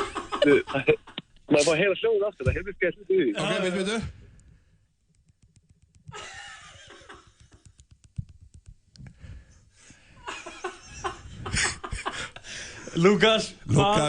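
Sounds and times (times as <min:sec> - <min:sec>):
person speaking: 0:00.4 - 0:04.2
fingers tapping on teeth: 0:07.3 - 0:09.1.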